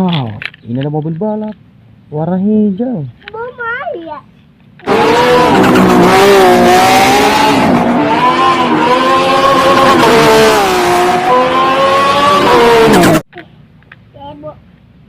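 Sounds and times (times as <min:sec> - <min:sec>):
racing car engine revving: 0:04.8 - 0:13.2.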